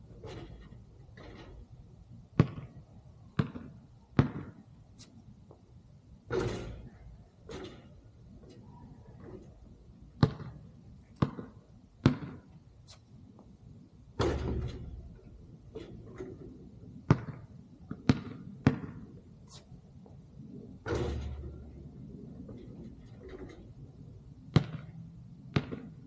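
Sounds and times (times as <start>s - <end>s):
basketball bouncing: 2.3s - 4.6s, 6.3s - 7.9s, 10.1s - 12.6s, 14.2s - 16.4s, 17.0s - 19.2s, 20.8s - 21.8s, 24.5s - 26.0s.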